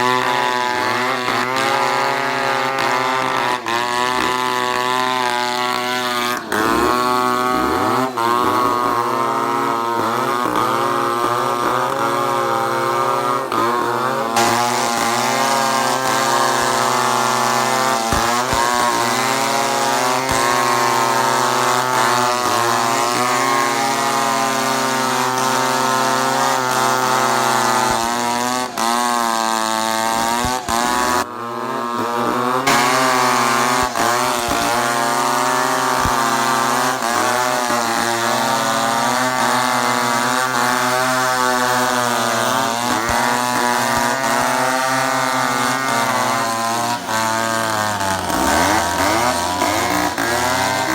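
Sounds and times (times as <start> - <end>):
chainsaw cutting wood: 0.0 - 50.9.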